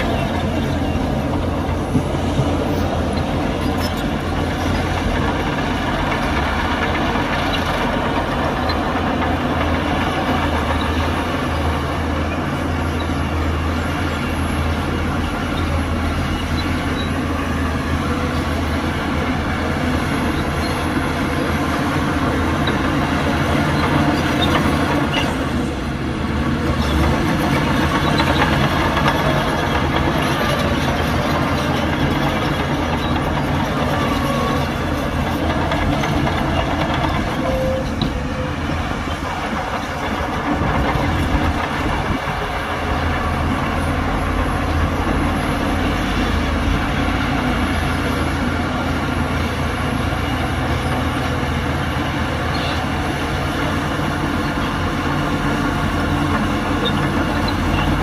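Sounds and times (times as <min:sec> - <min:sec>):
heavy diesel machinery running: 0:00.0 - 0:58.0.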